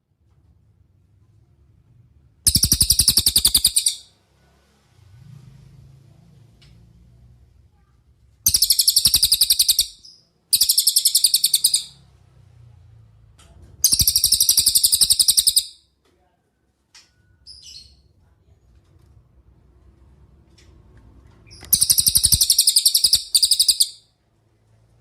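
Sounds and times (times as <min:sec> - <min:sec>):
bird trilling: 0:02.5 - 0:04.1, 0:08.5 - 0:12.0, 0:13.8 - 0:15.8, 0:21.6 - 0:24.0.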